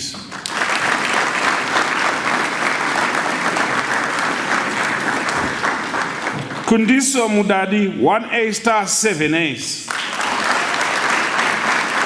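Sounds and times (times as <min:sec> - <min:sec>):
audience applauding: 0:00.0 - 0:07.4, 0:09.9 - 0:12.0.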